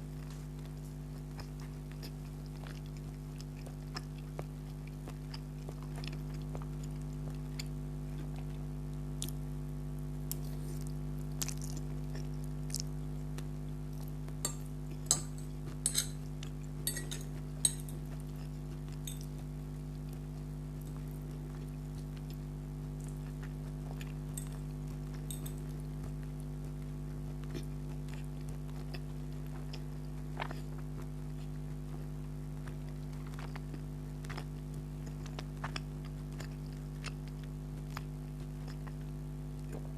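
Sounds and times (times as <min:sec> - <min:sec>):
steady low hum: 0:00.0 - 0:39.9
chewing mouth clicks and smacks: 0:32.6 - 0:39.9.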